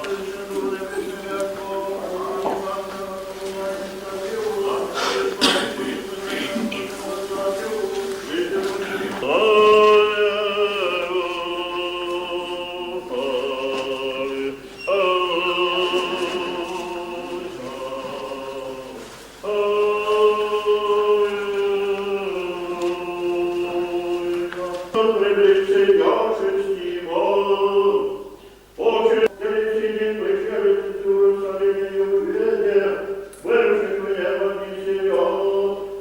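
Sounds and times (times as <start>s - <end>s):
choir chanting: 0.0s - 36.0s.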